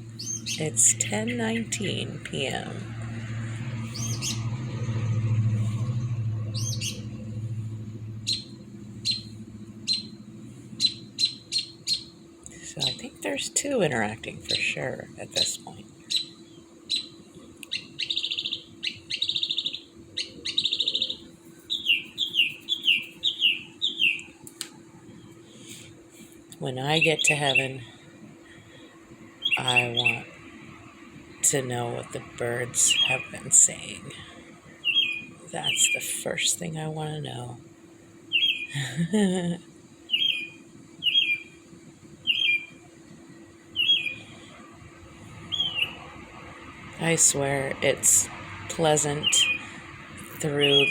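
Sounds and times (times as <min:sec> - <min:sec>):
bird calling: 0:00.0 - 0:02.8, 0:03.8 - 0:04.5, 0:06.5 - 0:07.1, 0:08.2 - 0:10.2, 0:10.8 - 0:12.2, 0:15.4 - 0:24.3, 0:29.4 - 0:30.4, 0:32.7 - 0:36.1, 0:38.3 - 0:38.8, 0:40.1 - 0:41.6, 0:42.2 - 0:42.8, 0:43.8 - 0:44.6, 0:45.4 - 0:46.0, 0:50.4 - 0:50.9
songbird singing: 0:00.0 - 0:25.8, 0:26.6 - 0:50.9
faint low hum: 0:00.0 - 0:50.9.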